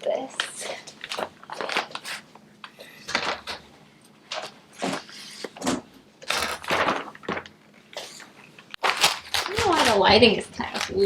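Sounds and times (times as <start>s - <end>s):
wrapping paper tearing and crumpling: 1.0s - 2.3s, 6.2s - 7.4s, 8.8s - 11.0s.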